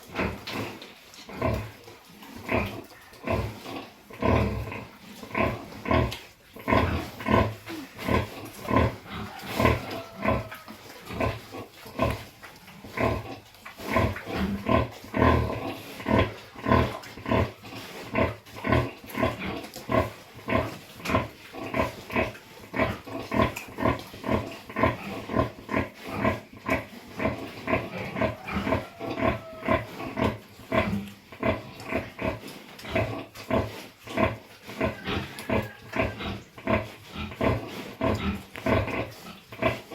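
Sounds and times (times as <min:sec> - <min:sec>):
pig grunting: 0:00.0 - 0:12.3, 0:12.9 - 0:39.9.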